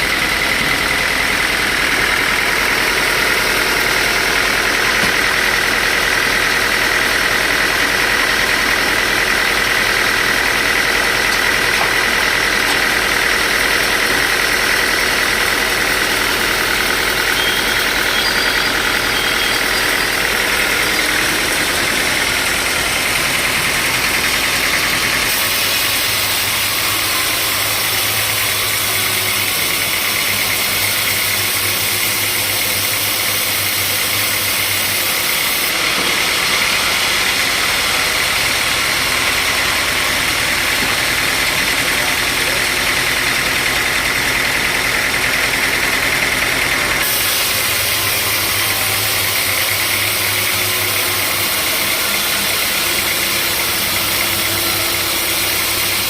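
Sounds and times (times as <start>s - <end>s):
motor hum: 0.0s - 56.0s
saw hissing: 7.3s - 39.2s, 47.0s - 56.0s.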